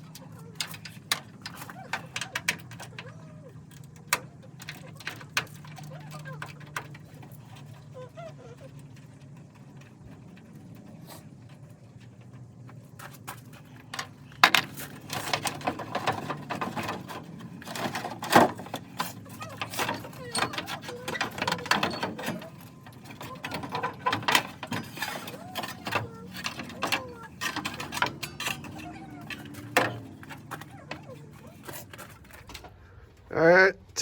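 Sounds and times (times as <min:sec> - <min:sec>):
metallic clinking of hand tools: 0:13.8 - 0:32.8.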